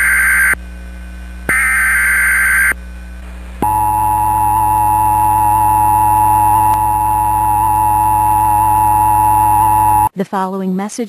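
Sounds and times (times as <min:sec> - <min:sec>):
buzzing data burst: 0:00.0 - 0:00.6, 0:01.5 - 0:02.8, 0:03.6 - 0:10.1.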